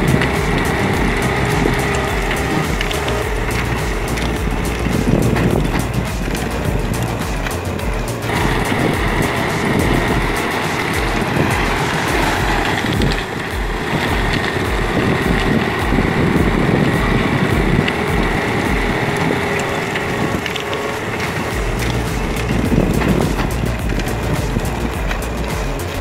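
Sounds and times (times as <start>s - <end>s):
crushing mechanical noise: 0.0s - 26.0s
heavy machine engine under load: 0.0s - 26.0s
wind on microphone: 0.0s - 26.0s.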